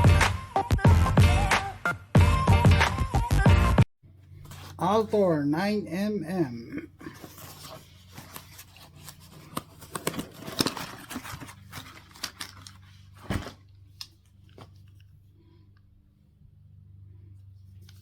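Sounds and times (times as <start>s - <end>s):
objects rustling and clicking: 7.1s - 15.2s.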